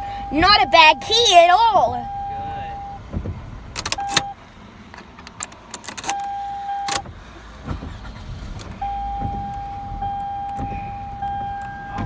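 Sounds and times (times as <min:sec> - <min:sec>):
car warning chime beeping: 0:00.0 - 0:03.1, 0:03.8 - 0:04.4, 0:06.0 - 0:07.0, 0:08.8 - 0:12.0
key jingling in ignition: 0:03.7 - 0:07.0.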